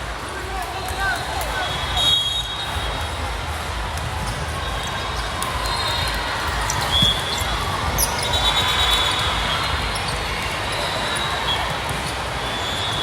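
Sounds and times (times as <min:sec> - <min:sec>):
ball bouncing on court: 0:04.0 - 0:12.4
sneakers squeaking on floor: 0:04.2 - 0:13.0.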